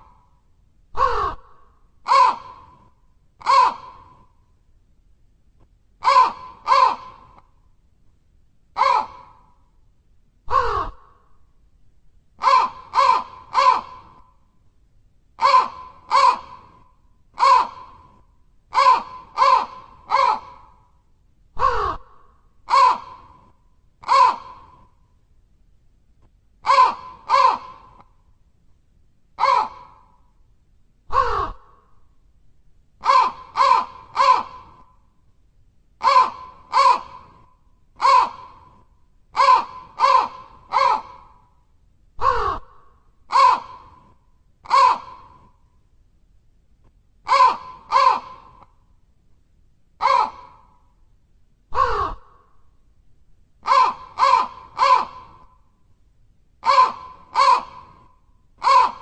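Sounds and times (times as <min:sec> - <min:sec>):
crow cawing: 0:01.0 - 0:04.3, 0:06.0 - 0:07.4, 0:08.8 - 0:09.6, 0:10.5 - 0:11.3, 0:12.4 - 0:14.3, 0:15.4 - 0:20.9, 0:21.6 - 0:24.9, 0:26.6 - 0:28.1, 0:29.4 - 0:30.2, 0:31.1 - 0:31.9, 0:33.0 - 0:35.0, 0:36.0 - 0:38.8, 0:39.4 - 0:41.5, 0:42.2 - 0:44.1, 0:44.7 - 0:45.5, 0:47.3 - 0:48.7, 0:50.0 - 0:50.8, 0:51.7 - 0:52.6, 0:53.6 - 0:55.6, 0:56.6 - 0:59.0.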